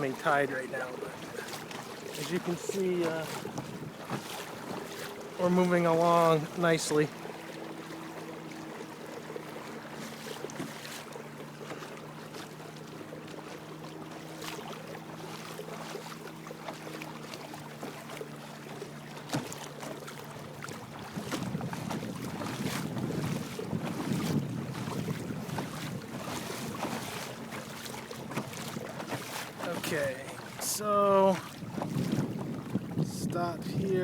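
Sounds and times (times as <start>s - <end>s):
rushing water and wind: 0.0s - 34.0s
water washing and slapping: 0.0s - 34.0s.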